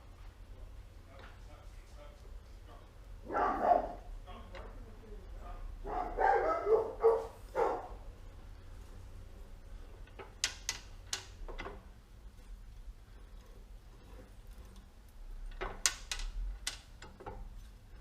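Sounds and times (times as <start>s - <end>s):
dog barking: 3.2s - 4.1s, 5.8s - 8.0s.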